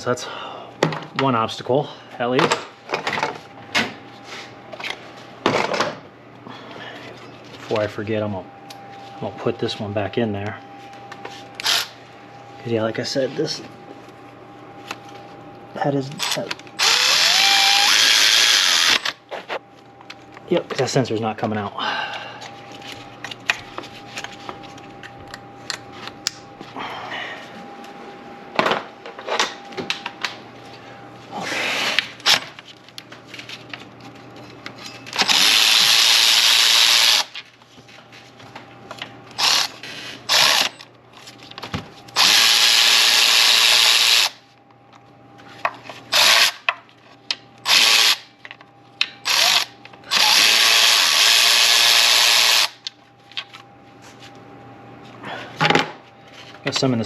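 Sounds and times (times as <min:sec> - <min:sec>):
cordless power tool spinning bolts: 0:11.6 - 0:11.9, 0:16.2 - 0:19.2, 0:35.1 - 0:37.3, 0:39.4 - 0:40.8, 0:42.2 - 0:44.4, 0:46.1 - 0:46.6, 0:47.6 - 0:48.2, 0:49.2 - 0:52.8
clinks of tools and metal: 0:34.8 - 0:35.3.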